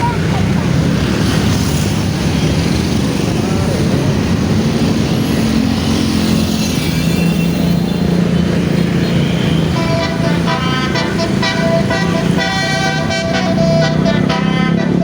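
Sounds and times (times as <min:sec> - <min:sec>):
bus engine and road noise: 0:00.0 - 0:15.0
musical bus horn playing: 0:09.6 - 0:15.0.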